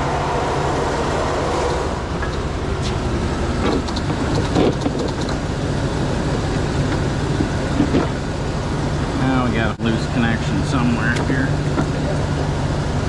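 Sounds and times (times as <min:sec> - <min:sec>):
truck engine running: 0:00.0 - 0:13.0.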